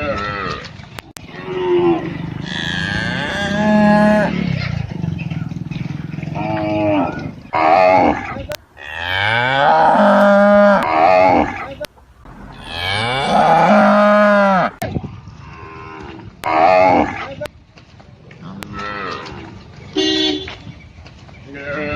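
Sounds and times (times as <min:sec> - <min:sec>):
cattle mooing: 0:00.0 - 0:04.8, 0:06.1 - 0:14.8.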